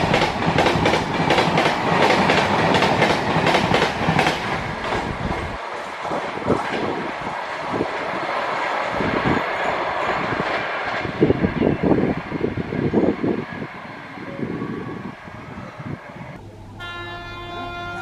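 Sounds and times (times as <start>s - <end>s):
train wheels clattering over rail joints: 0.0s - 11.3s.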